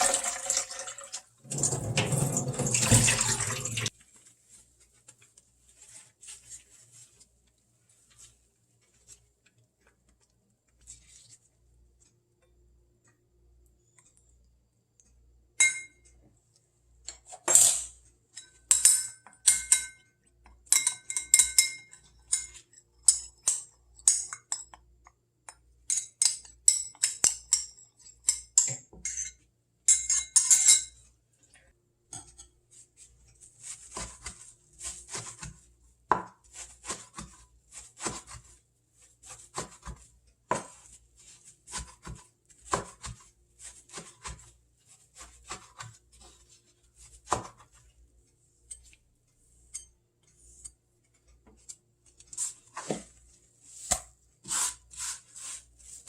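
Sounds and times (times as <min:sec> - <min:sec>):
soft tapping and scraping: 0:03.9 - 0:13.2, 0:31.5 - 0:56.0
utensils clinking against dishes: 0:25.9 - 0:31.0.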